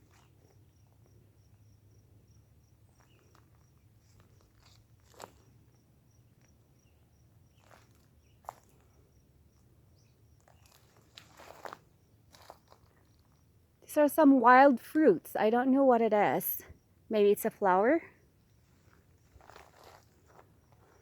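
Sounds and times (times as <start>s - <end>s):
insect chirping: 0.0s - 14.0s, 18.2s - 21.0s
footsteps on dry ground: 10.5s - 12.9s, 18.8s - 21.0s.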